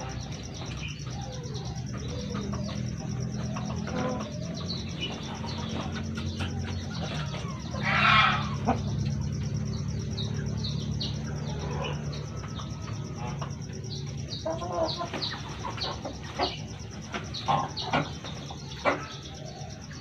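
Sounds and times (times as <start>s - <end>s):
chickens chirping: 0.0s - 20.0s
steady low hum: 0.0s - 20.0s
chicken harsh call: 7.1s - 8.9s.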